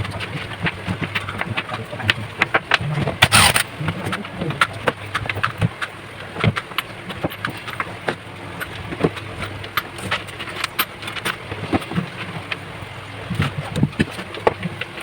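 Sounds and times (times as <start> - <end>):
metal parts and tools clicking: 3.2 - 3.7.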